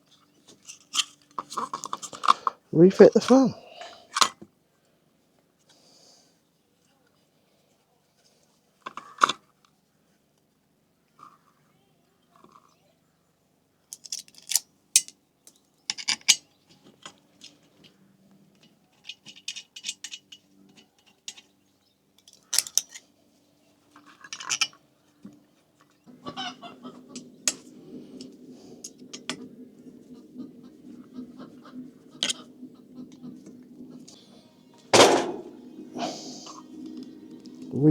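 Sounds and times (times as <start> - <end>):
metal parts and tools clinking: 13.9 - 15.1, 22.2 - 23.0, 35.0 - 35.6
steady low hum: 26.1 - 37.9.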